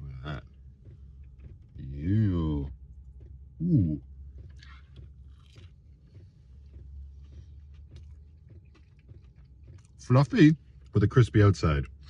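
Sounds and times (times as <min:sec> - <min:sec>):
steady low hum: 0:00.0 - 0:12.0
person chewing with crunching: 0:03.0 - 0:12.0.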